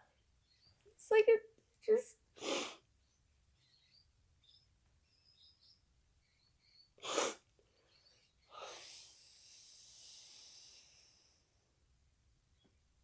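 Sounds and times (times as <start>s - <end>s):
sharp breath through nose: 2.4s - 2.8s, 7.0s - 11.6s
long hissing exhale: 7.0s - 7.4s, 8.5s - 11.6s.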